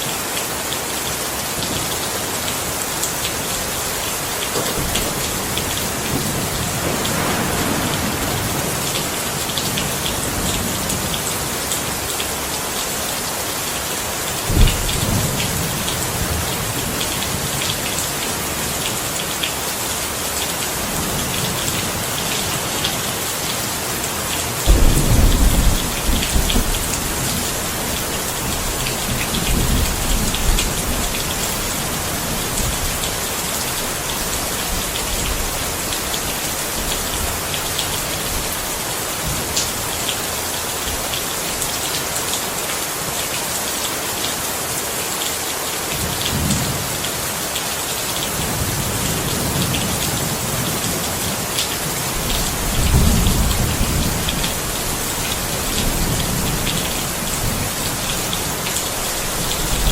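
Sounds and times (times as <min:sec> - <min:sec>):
steady rain falling: 0:00.0 - 0:59.9
thunder rumbling: 0:03.6 - 0:12.1, 0:14.5 - 0:18.8, 0:24.6 - 0:41.2, 0:52.1 - 0:59.9.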